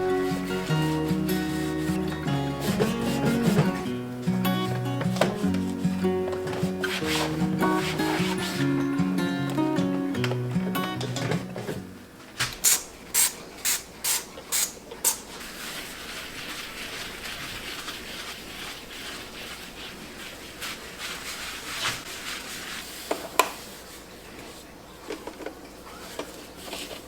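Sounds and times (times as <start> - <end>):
cloth rubbing over surface: 0.2 - 4.0, 5.4 - 8.8, 15.3 - 24.8
spray bottle squirting: 12.5 - 15.5.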